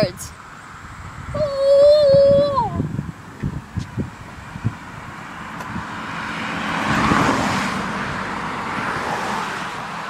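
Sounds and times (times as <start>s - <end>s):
car driving past: 4.8s - 10.0s.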